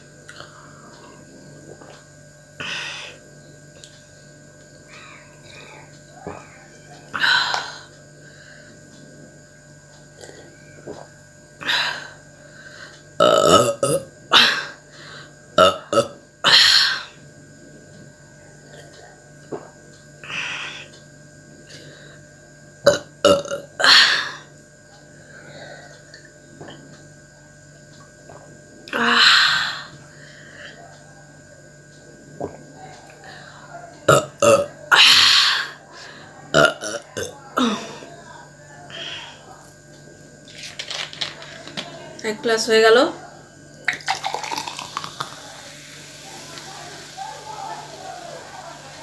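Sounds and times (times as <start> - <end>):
woman burping loudly: 13.2 - 14.8, 15.6 - 17.1, 22.9 - 24.4, 34.1 - 35.7, 36.5 - 38.0, 43.9 - 47.2.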